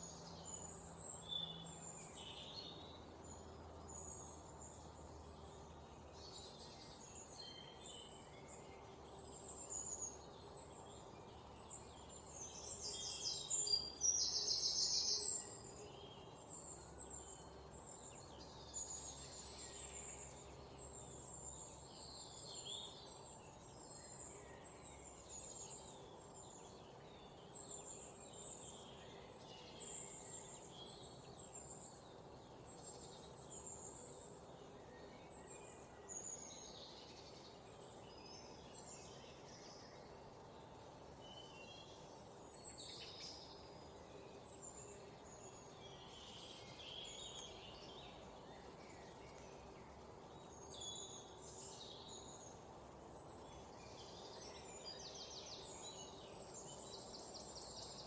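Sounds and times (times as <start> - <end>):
faint steady hiss: 0.0 - 58.0
songbirds chirping: 0.0 - 58.0.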